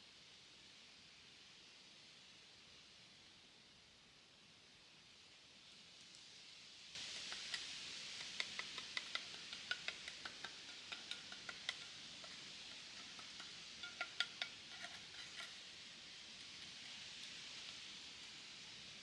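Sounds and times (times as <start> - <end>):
steady hiss: 0.0 - 19.0
light sharp clinks: 7.0 - 15.6.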